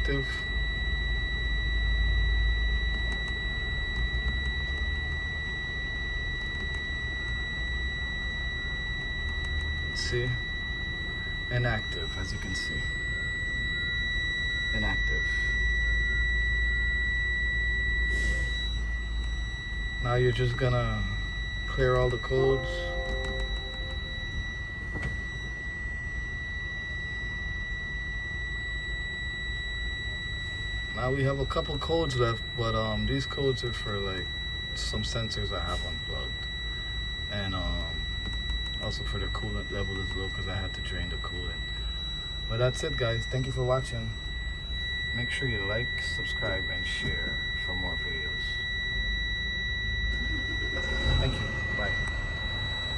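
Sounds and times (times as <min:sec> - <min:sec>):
high-pitched electronic buzzer tone: 0:00.0 - 0:52.9
click: 0:02.9 - 0:04.9, 0:06.4 - 0:06.8, 0:09.2 - 0:09.7, 0:38.2 - 0:38.8
low rumble: 0:50.0 - 0:52.9.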